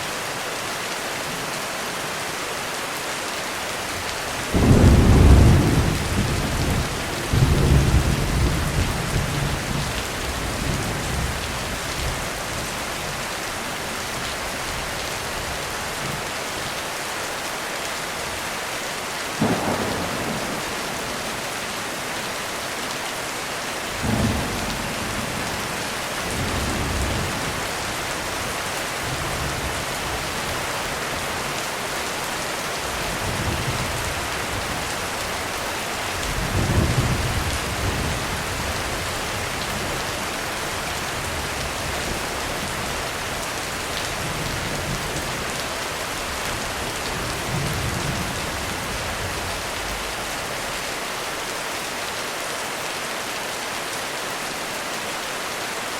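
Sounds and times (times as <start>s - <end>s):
heavy rain on a roof: 0.0s - 55.9s
thunder rumbling: 4.6s - 12.2s, 19.4s - 22.9s, 23.9s - 30.4s.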